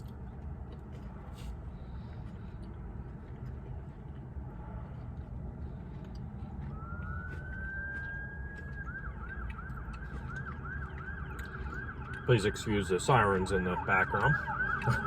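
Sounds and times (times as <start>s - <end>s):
low steady rumble: 0.0s - 15.0s
emergency vehicle siren: 6.4s - 15.0s.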